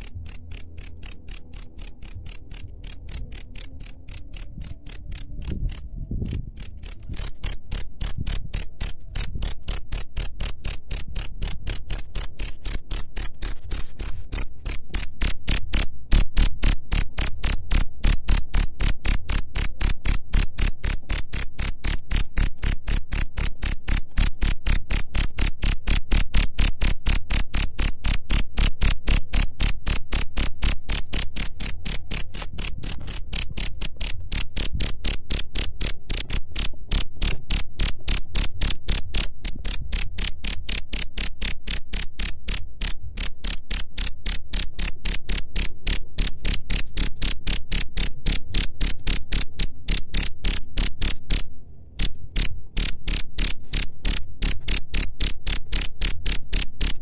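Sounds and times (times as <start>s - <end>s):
cricket chirping: 0.0s - 57.0s.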